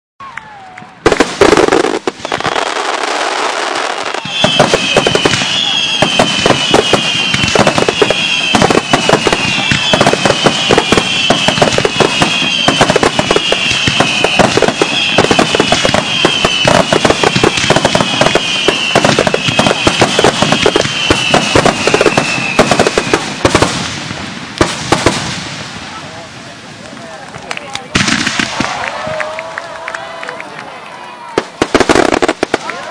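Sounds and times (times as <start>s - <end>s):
fireworks bursting and crackling: 0.5s - 29.4s, 30.9s - 32.9s
high falling whistle: 4.1s - 23.4s.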